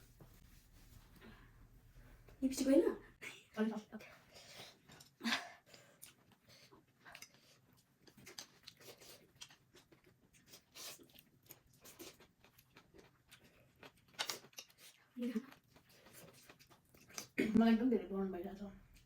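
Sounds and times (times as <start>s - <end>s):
quiet chewing: 4.4s - 17.4s.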